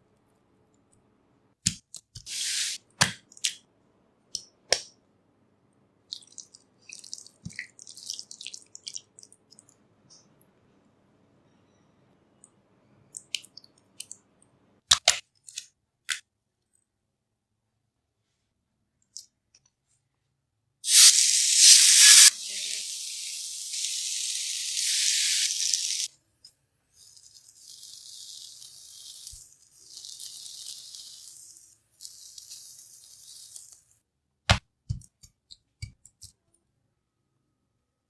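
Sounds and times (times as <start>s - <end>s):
food sizzling in a pan: 2.3s - 2.8s, 20.9s - 26.1s, 27.4s - 33.8s.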